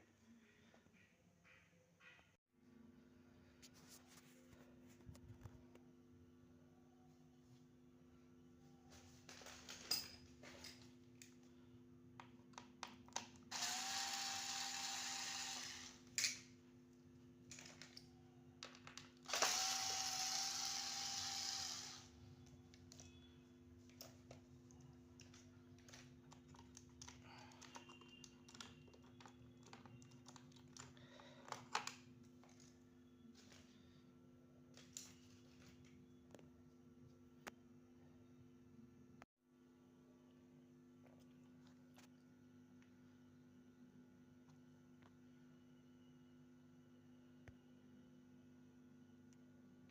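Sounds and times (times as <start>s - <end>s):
faint electrical hum: 0.0s - 49.9s
power tool motor whine: 13.5s - 16.0s, 19.3s - 22.2s.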